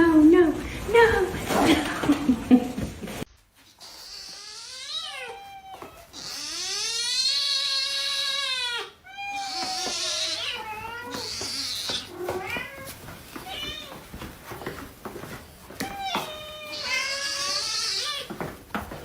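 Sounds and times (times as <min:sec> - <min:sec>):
cat meowing: 0:03.7 - 0:14.1, 0:15.8 - 0:18.4.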